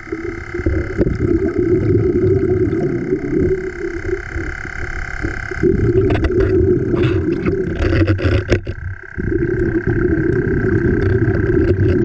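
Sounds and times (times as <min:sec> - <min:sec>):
motor whining: 0:00.0 - 0:12.0
scattered clicks and knocks: 0:06.0 - 0:09.0.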